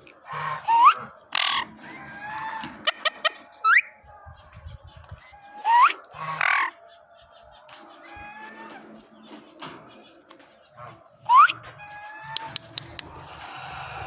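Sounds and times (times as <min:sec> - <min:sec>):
parrot squawking: 0:11.3 - 0:11.6
parrot whistles sliding upward: 0:11.3 - 0:11.6
sharp clicks: 0:12.3 - 0:13.5.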